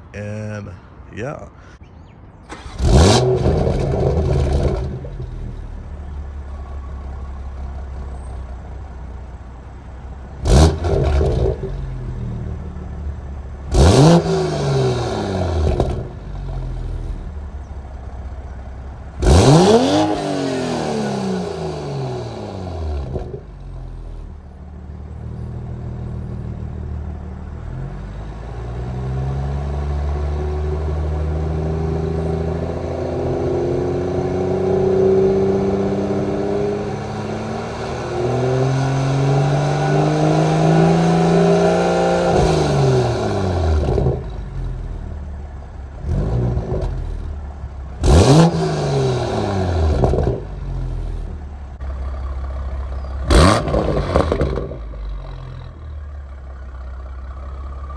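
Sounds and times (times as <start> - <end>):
sports car exhaust passing by: 2.5 - 57.9.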